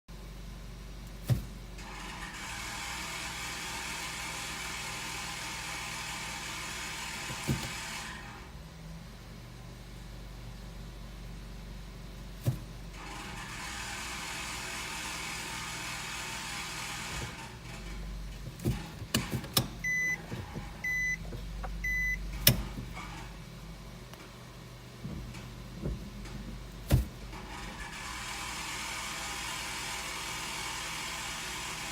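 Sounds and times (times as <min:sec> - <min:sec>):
whirring hiss of fan: 0:00.2 - 0:31.9
thump: 0:01.2 - 0:01.6, 0:07.3 - 0:07.8, 0:12.4 - 0:12.8, 0:26.9 - 0:27.2.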